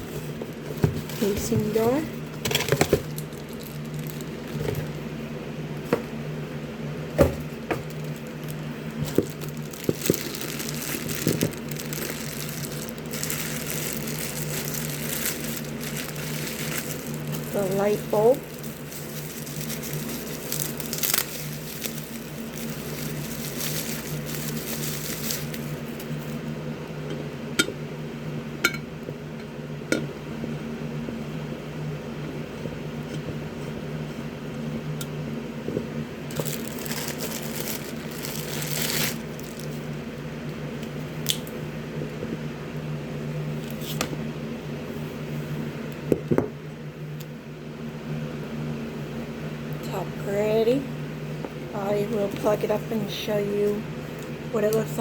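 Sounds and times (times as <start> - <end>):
steady low hum: 0.0 - 55.0
paper and cardboard rustling: 0.2 - 4.9, 9.0 - 26.4, 36.3 - 39.8.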